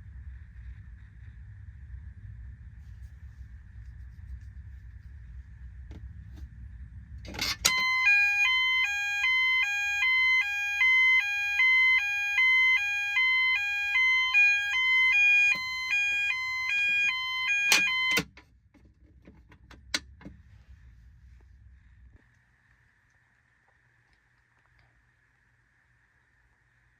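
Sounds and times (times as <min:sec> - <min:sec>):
alarm clicks: 0:07.3 - 0:18.4
two-tone fire alarm: 0:07.3 - 0:18.4.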